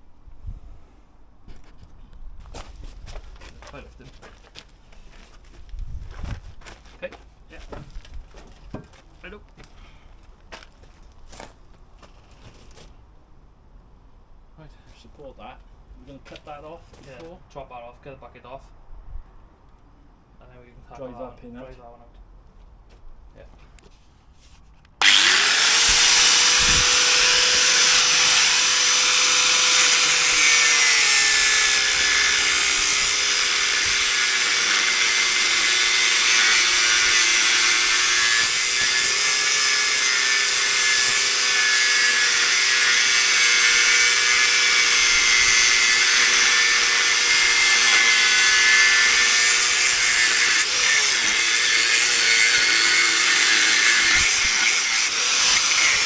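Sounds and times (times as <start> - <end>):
angle grinder cutting metal: 25.0 - 56.0.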